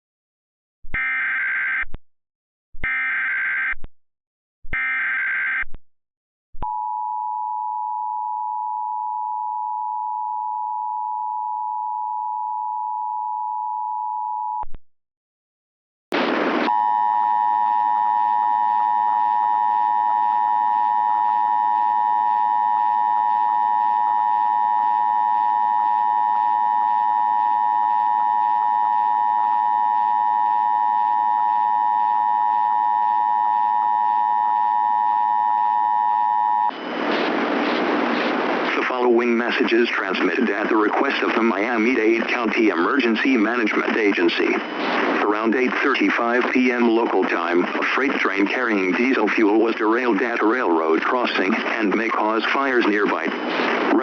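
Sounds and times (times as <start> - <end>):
harsh continuous tone: 36.4 - 54.0.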